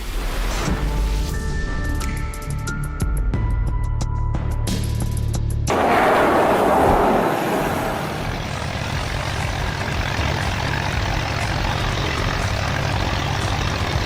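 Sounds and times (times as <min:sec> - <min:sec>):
loud rushing noise: 0:05.7 - 0:09.4
heavy vehicle engine running: 0:05.7 - 0:14.0.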